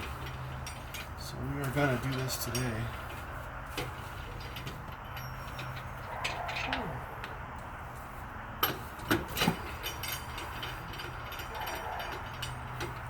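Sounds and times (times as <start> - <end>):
metal tools and lug nuts clinking: 0.0 - 7.6, 8.6 - 13.0.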